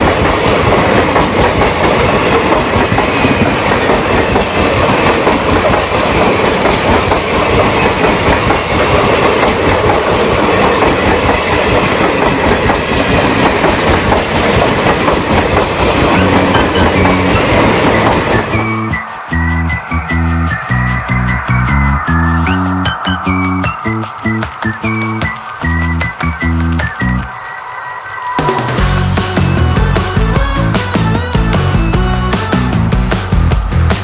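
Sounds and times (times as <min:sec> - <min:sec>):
train wheels clattering on rails: 0:00.0 - 0:19.5.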